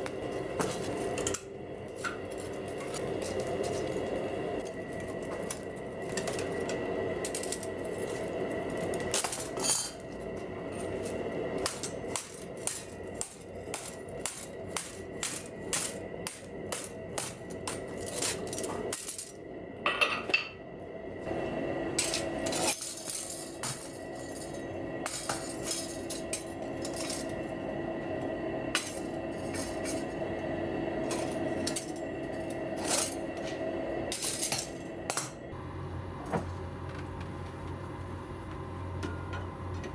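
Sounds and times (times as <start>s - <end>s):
steady background hum: 0.0s - 39.9s
metal strands clinking: 22.0s - 27.4s, 28.8s - 30.2s.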